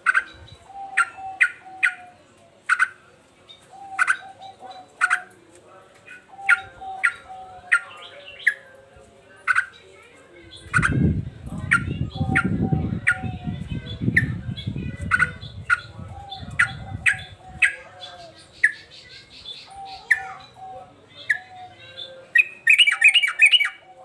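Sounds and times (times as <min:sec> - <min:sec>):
bird chattering: 0:00.0 - 0:05.4, 0:06.0 - 0:08.7, 0:09.4 - 0:24.0.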